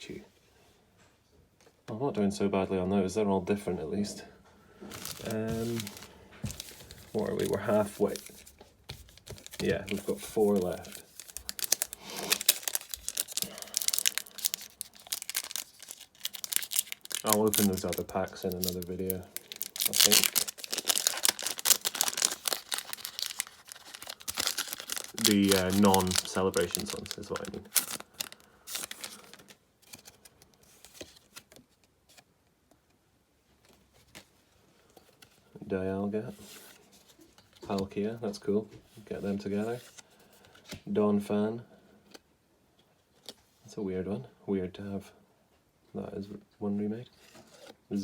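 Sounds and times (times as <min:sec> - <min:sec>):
foil wrapper crinkling and tearing: 0:04.9 - 0:31.4
trading cards clicking and rustling: 0:04.9 - 0:31.6.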